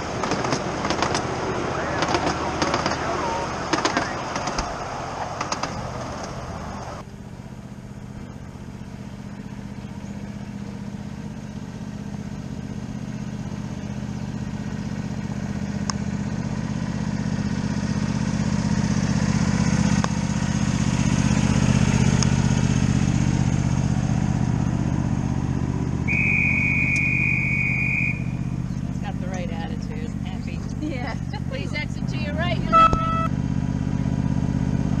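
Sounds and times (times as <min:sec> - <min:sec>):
miniature train engine drone: 0:00.0 - 0:35.0
train whistle: 0:26.1 - 0:28.4, 0:32.7 - 0:33.3.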